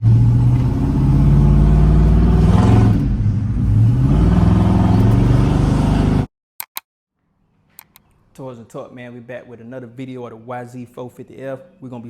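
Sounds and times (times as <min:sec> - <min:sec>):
dirt bike engine revving: 0:00.0 - 0:06.3.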